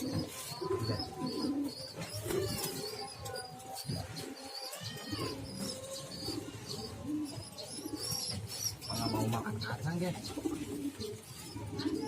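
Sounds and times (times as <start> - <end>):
pigeon cooing hoarsely: 0.0 - 9.6.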